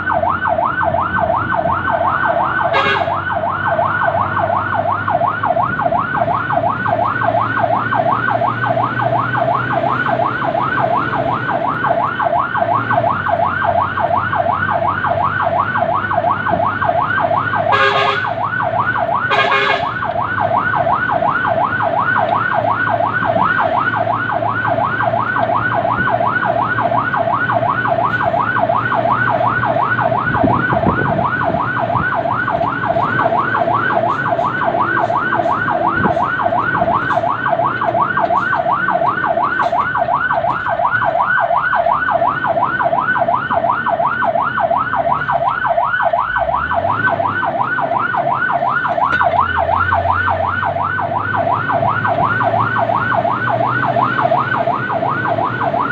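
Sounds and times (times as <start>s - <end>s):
fire truck siren yelping: 0.0s - 55.9s
truck engine running: 0.0s - 55.9s
short horn blasts: 2.7s - 3.2s, 17.7s - 18.3s, 19.3s - 19.9s.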